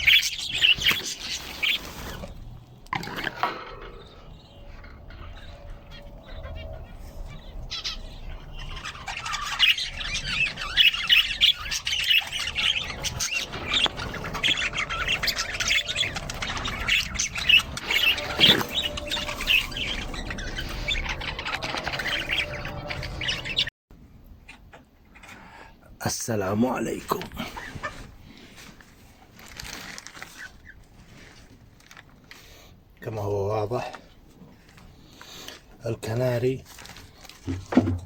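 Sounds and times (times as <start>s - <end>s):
caged birds chirping and squawking: 0.0s - 23.7s, 24.4s - 38.0s.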